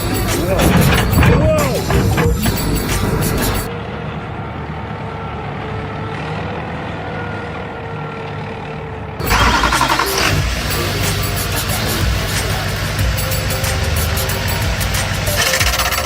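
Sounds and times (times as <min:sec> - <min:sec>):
loud music: 0:00.0 - 0:03.7, 0:09.2 - 0:16.0
heavy vehicle engine running: 0:00.0 - 0:16.0.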